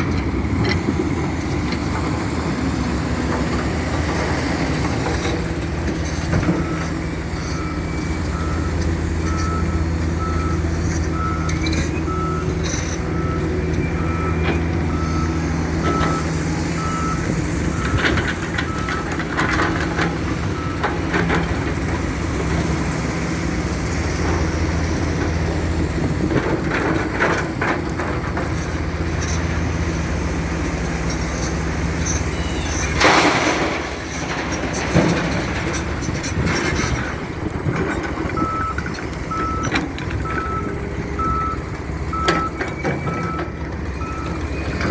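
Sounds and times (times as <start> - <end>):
diesel engine running: 0.0 - 44.9
reversing alarm beeping: 6.4 - 21.2, 32.0 - 33.0, 36.8 - 44.9.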